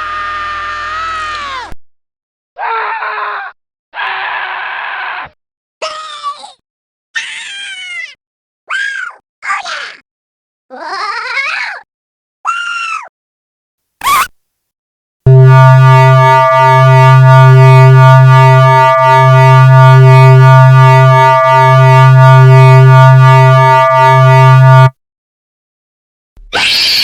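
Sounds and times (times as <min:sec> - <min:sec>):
electronic drone tone: 0:15.3 - 0:25.0.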